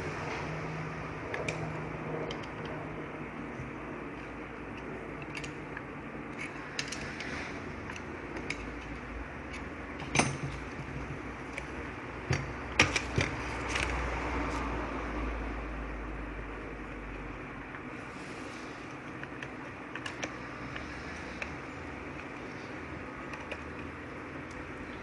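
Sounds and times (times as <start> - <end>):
clicks and knocks of hand tools: 4.7 - 14.0, 19.1 - 22.6.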